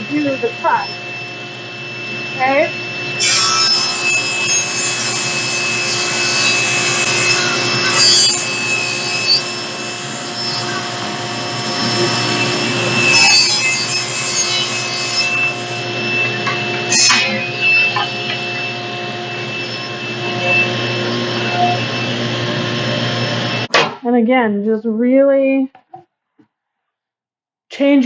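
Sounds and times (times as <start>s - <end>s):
table saw cutting plywood: 0.0s - 23.9s.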